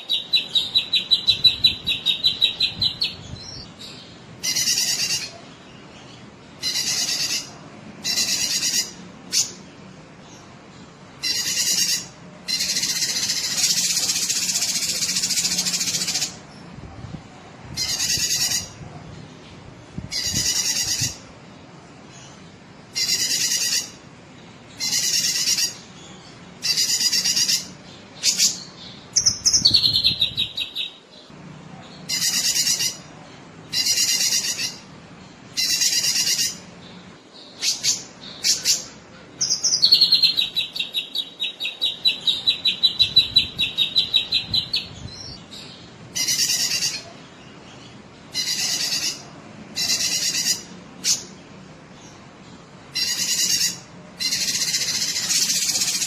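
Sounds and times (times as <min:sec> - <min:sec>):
bird chattering calls: 0:04.4 - 0:05.5, 0:06.6 - 0:09.6, 0:11.2 - 0:16.4, 0:17.8 - 0:18.8, 0:20.1 - 0:21.2, 0:22.9 - 0:24.0, 0:24.8 - 0:25.9, 0:26.6 - 0:28.6, 0:32.1 - 0:33.1, 0:33.7 - 0:34.9, 0:35.5 - 0:36.7, 0:46.1 - 0:47.2, 0:48.3 - 0:51.3, 0:52.9 - 0:56.0.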